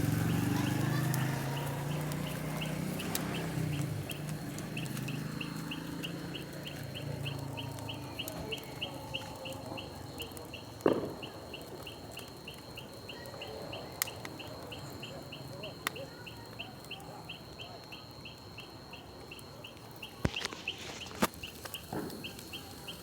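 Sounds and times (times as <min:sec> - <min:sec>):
rapid even chirping: 0:00.0 - 0:23.0
loud pop: 0:10.8 - 0:11.4, 0:21.2 - 0:22.4.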